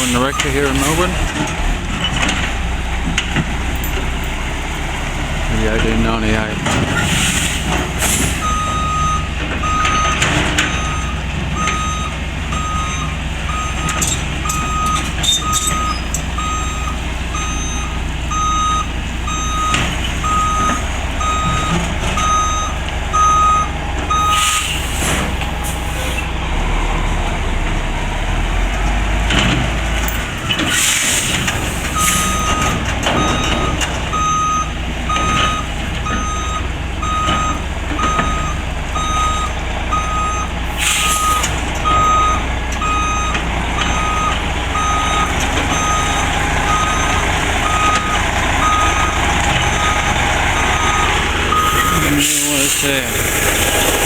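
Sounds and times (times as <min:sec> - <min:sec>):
reversing alarm beeping: 0:00.0 - 0:01.2, 0:08.3 - 0:26.3, 0:30.0 - 0:54.0
diesel engine running: 0:00.0 - 0:54.0.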